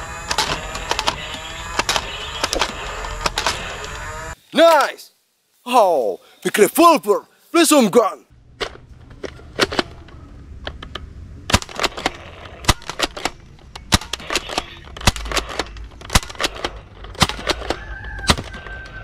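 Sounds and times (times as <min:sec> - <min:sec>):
toy gun clicking: 0:11.5 - 0:18.5.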